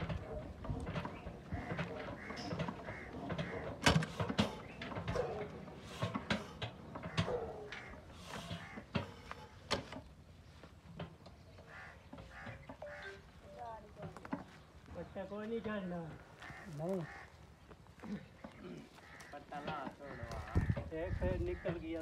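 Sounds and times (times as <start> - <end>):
knocks and clicks: 0.0 - 9.1.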